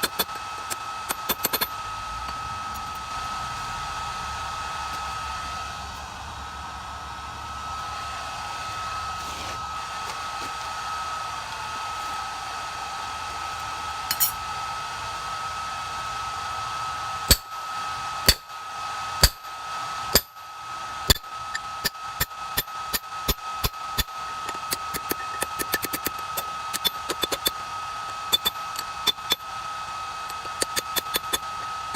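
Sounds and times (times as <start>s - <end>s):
forge blower running: 0.0s - 31.9s
hammer striking steel on anvil: 14.1s - 14.4s, 17.3s - 17.5s, 19.2s - 19.5s, 20.1s - 20.3s, 21.1s - 27.6s, 28.3s - 29.4s.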